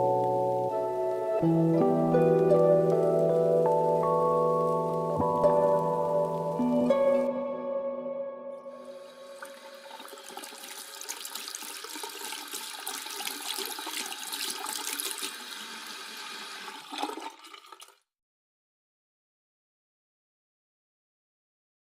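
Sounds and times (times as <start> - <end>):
rushing water: 8.8 - 17.9.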